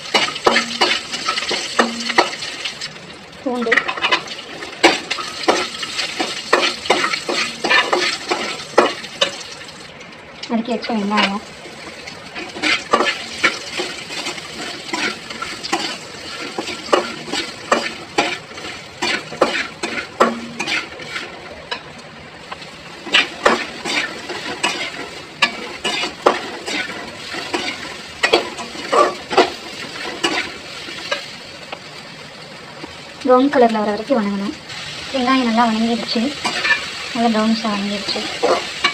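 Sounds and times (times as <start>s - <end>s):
spoon scraping and knocking pan: 0.0s - 2.5s, 3.7s - 9.4s, 12.4s - 21.9s, 23.0s - 31.3s, 36.0s - 36.9s, 38.0s - 38.9s
onions sizzling in hot oil: 0.0s - 38.9s.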